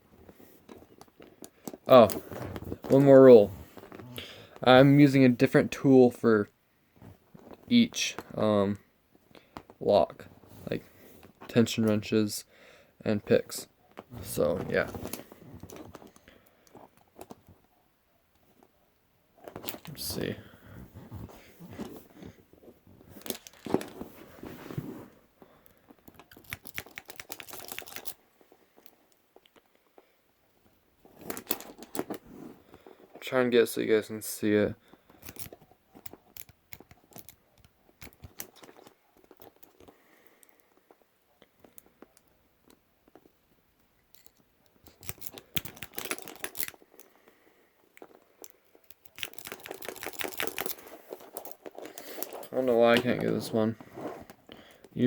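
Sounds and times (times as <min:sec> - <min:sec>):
handling rattles: 0:31.0 - 0:33.3, 0:44.1 - 0:47.2, 0:47.8 - 0:55.0.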